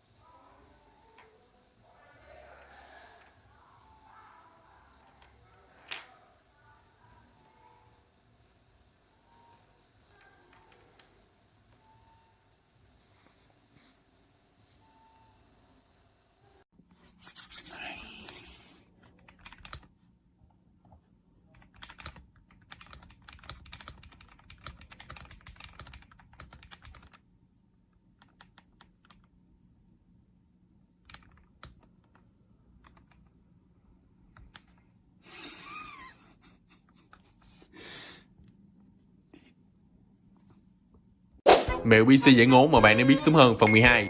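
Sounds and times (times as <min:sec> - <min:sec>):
mechanical keyboard typing: 0:19.0 - 0:19.9, 0:21.5 - 0:27.2, 0:28.1 - 0:29.3, 0:31.0 - 0:32.2, 0:32.8 - 0:33.3.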